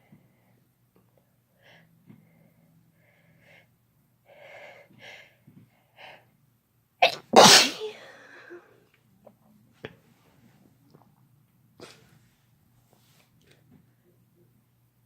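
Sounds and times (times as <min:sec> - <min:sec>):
person sneezing loudly: 0:07.0 - 0:08.2.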